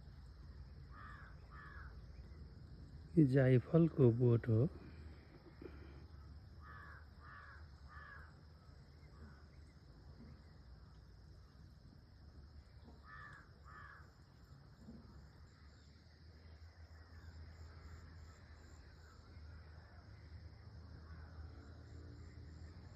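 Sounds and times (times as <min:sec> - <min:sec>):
short bird calls: 0:00.8 - 0:02.5, 0:04.8 - 0:10.7, 0:12.7 - 0:14.2.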